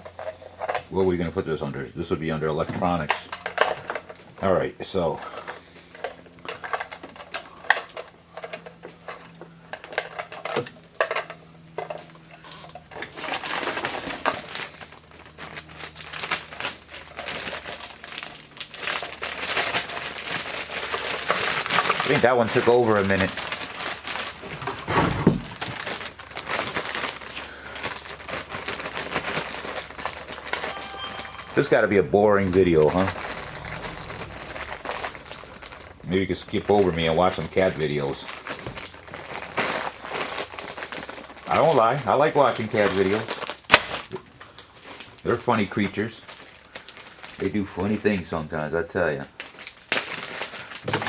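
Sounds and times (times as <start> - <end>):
crinkling and rustling: 0.0 - 1.0, 2.4 - 51.0
foot pedals clattering: 24.3 - 25.9.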